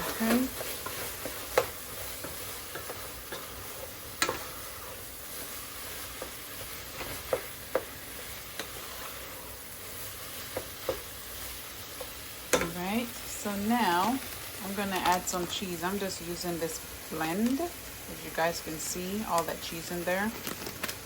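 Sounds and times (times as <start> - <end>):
ground meat sizzling in a pot: 0.0 - 21.0.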